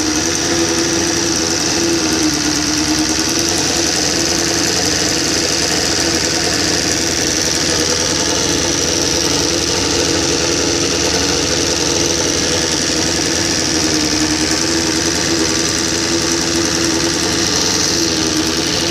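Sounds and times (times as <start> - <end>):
fast mechanical ticking rattle: 0.0 - 18.9
motorcycle engine running: 0.0 - 18.9.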